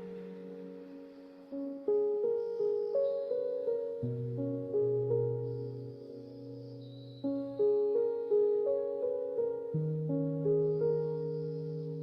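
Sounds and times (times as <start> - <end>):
soft piano music: 0.0 - 12.0.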